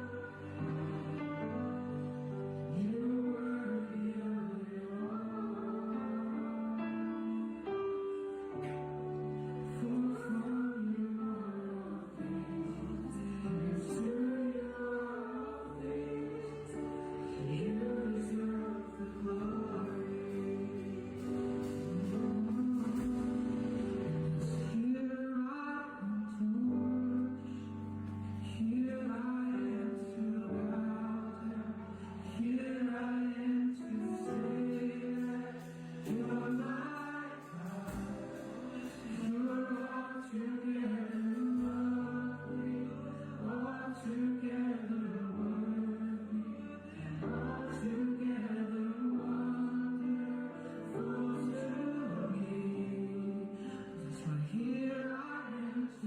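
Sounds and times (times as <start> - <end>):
group of voices singing: 0.0 - 56.0
instrumental backing: 15.7 - 25.0.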